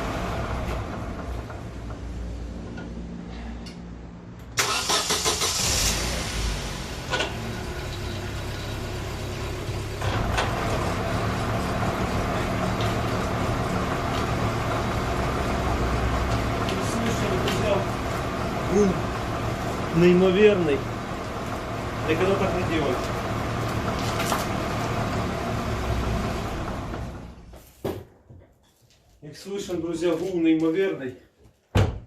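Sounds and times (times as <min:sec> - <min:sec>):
car engine running: 0:05.5 - 0:27.4.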